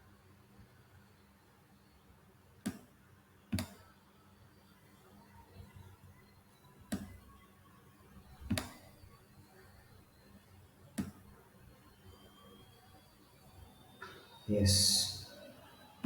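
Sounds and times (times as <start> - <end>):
computer mouse clicks: 8.4 - 8.8.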